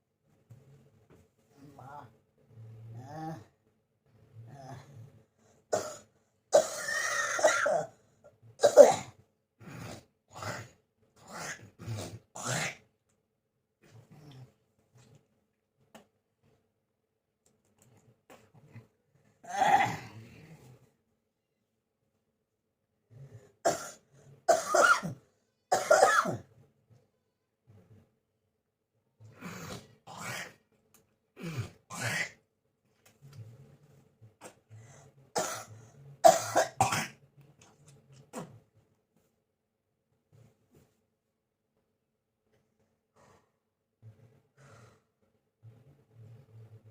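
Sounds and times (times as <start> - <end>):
person coughing: 5.7 - 8.0, 8.6 - 9.2, 23.7 - 26.4, 35.4 - 37.2.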